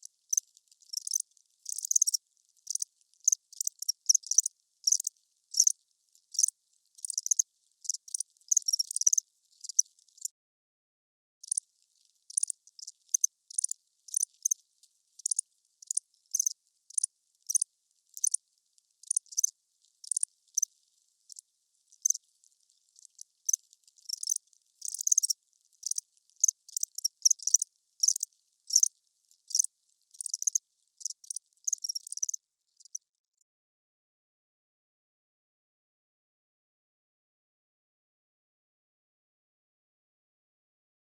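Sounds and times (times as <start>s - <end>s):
crickets chirping: 0.3s - 5.7s, 6.3s - 9.8s, 12.3s - 14.6s, 15.2s - 17.6s, 18.2s - 18.4s, 19.0s - 20.7s, 23.0s - 28.9s, 29.5s - 33.0s.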